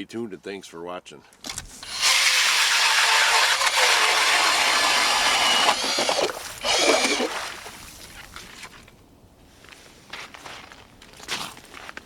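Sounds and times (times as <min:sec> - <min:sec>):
ice auger whirring: 0:01.8 - 0:07.4.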